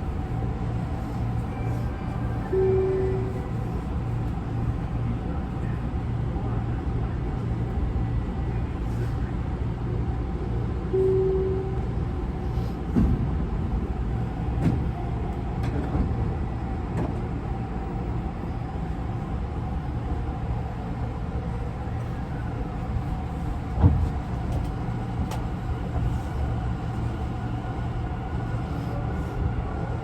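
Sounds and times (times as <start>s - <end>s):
train interior hum: 0.0s - 30.0s
short beep: 2.5s - 3.3s, 10.9s - 11.7s.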